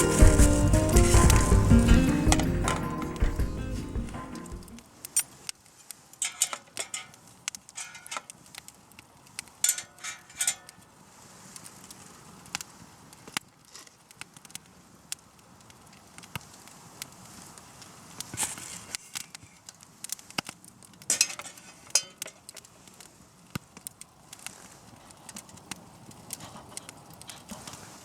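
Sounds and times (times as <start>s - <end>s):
rustling bursts: 0.0s - 4.8s
campfire crackling: 0.0s - 28.0s.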